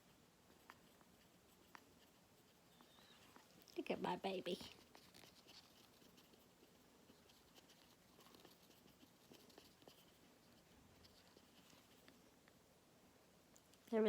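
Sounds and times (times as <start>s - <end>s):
faint small clicks and scratches: 0.0s - 3.8s, 4.4s - 12.6s, 13.5s - 14.0s.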